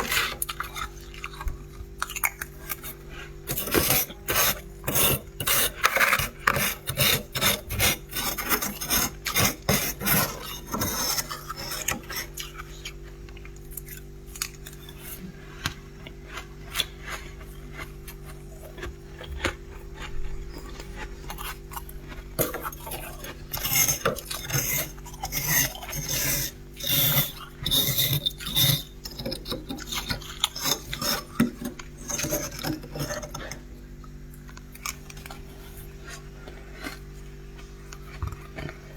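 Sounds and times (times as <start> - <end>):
frost being scraped: 0.0 - 0.4, 2.6 - 12.7, 20.0 - 33.5
steady low hum: 0.0 - 38.9.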